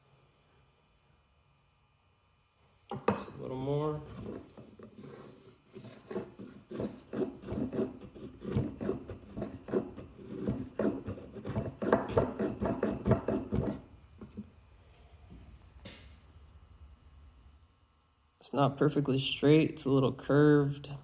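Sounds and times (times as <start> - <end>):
hand plane scraping wood: 4.0 - 14.4.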